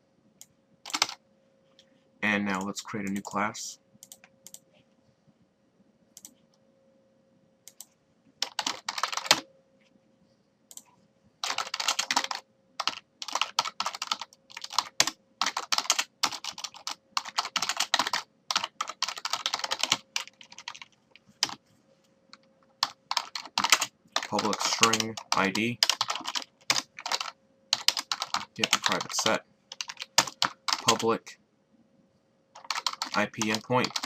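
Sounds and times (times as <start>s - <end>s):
faint steady hum: 0.0s - 34.0s
typing on computer keyboard: 0.8s - 1.2s, 7.7s - 9.4s, 10.7s - 21.6s, 22.8s - 31.1s, 32.6s - 34.0s.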